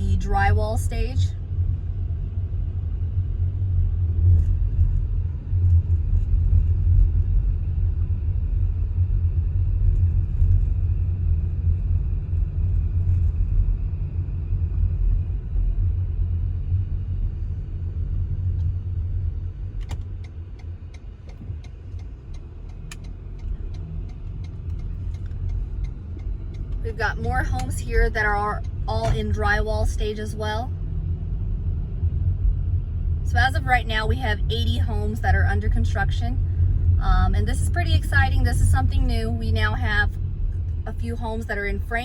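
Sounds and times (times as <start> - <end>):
car driving low rumble: 0.0 - 42.0.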